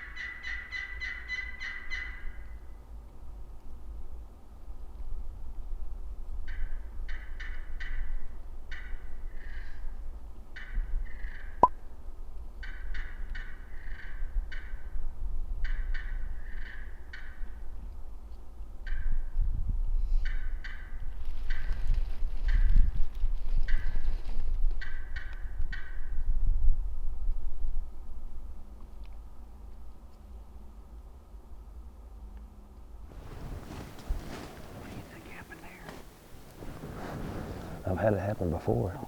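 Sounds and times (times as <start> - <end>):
turkey call yelps: 0.0 - 2.5.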